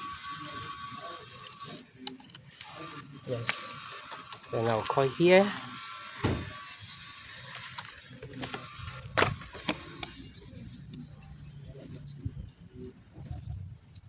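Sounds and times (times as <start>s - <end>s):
cutting tool hissing: 2.6s - 10.1s.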